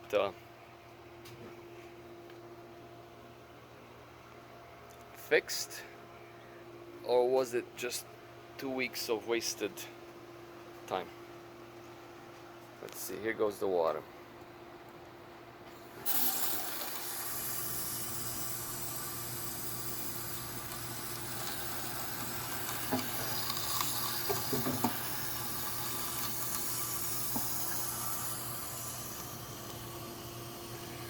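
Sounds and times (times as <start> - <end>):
water running into a metal tank: 16.0 - 31.0.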